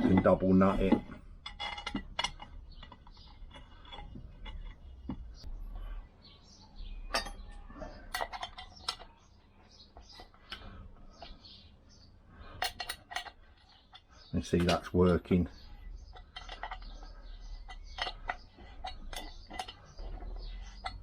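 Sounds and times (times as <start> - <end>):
metal nuts and spanner clinking: 0.0 - 5.5, 7.0 - 9.2, 12.5 - 21.0.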